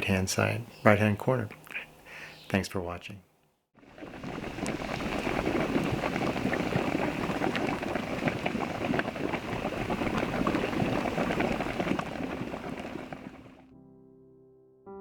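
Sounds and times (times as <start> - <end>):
water bubbling and splashing: 3.8 - 13.6.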